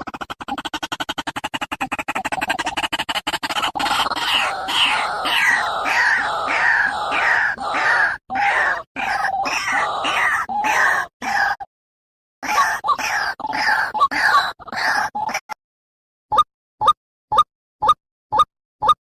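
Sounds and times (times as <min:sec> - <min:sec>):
bird harsh croaking notes: 0:00.0 - 0:11.7, 0:12.4 - 0:15.6.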